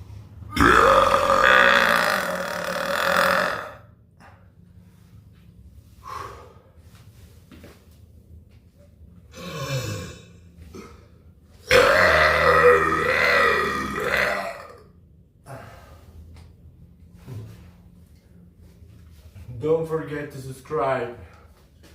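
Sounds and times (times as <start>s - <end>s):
person burping: 0.5s - 3.9s, 9.3s - 11.0s, 11.7s - 14.8s.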